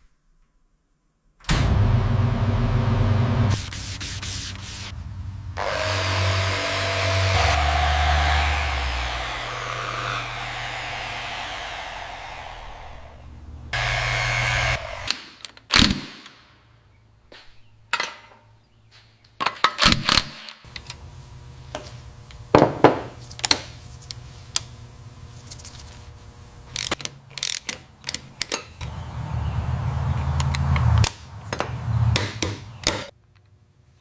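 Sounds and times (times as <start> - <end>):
low steady hum: 4.9 - 15.1
loud blower-like power tool: 5.6 - 15.2, 28.8 - 32.5
sharp clicks and knocks: 30.4 - 33.5.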